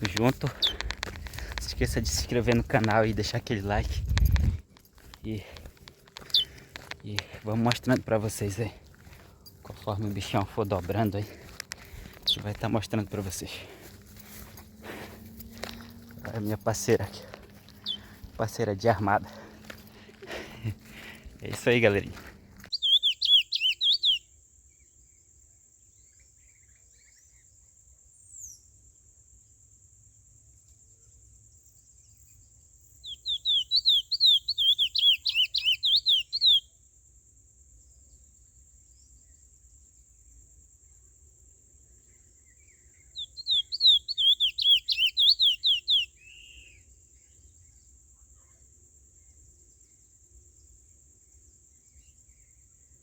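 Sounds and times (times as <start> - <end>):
finch singing whistled notes: 6.3 - 6.6, 17.1 - 18.4, 22.7 - 24.2, 33.0 - 36.7, 43.0 - 46.8.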